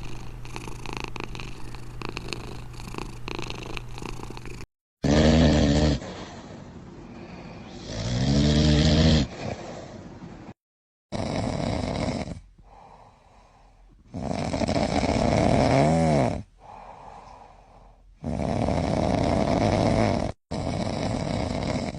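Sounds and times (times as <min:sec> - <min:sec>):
loud snoring: 0:00.0 - 0:10.0, 0:11.1 - 0:13.4, 0:14.0 - 0:21.9
quiet breathing: 0:06.0 - 0:07.9, 0:09.2 - 0:10.6, 0:12.4 - 0:14.1, 0:16.5 - 0:18.2.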